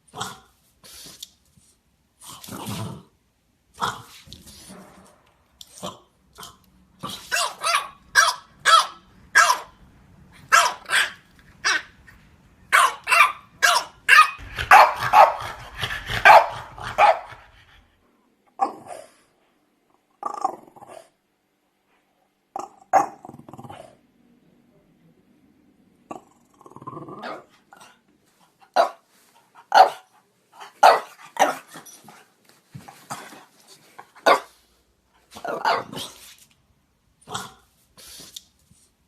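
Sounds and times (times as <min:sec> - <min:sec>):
small dogs yappy barking: 0:07.0 - 0:09.8, 0:10.4 - 0:12.0, 0:12.7 - 0:17.5, 0:29.7 - 0:32.0.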